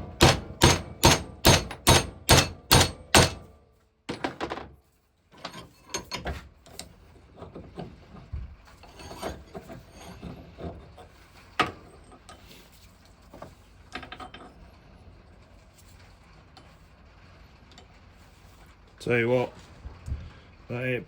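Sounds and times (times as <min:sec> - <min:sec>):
metal brackets knocking and clattering: 0:00.0 - 0:03.5, 0:04.1 - 0:04.7.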